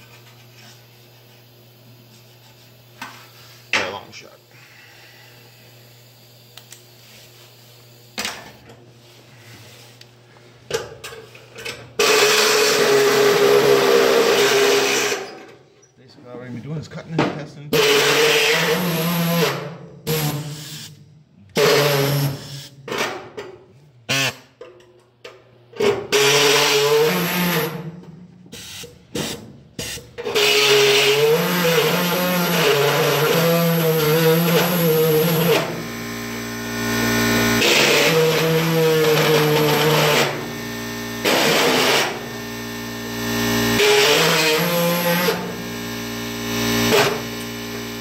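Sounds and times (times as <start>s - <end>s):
power tool cutting sheet metal: 12.0s - 15.5s, 17.7s - 21.0s, 21.6s - 23.2s, 24.1s - 24.5s, 25.8s - 28.0s, 28.6s - 48.0s.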